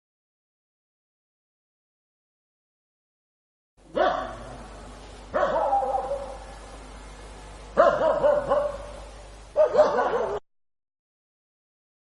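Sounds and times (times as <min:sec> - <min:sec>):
dog barking: 0:03.9 - 0:04.6, 0:05.3 - 0:06.4, 0:07.8 - 0:10.4.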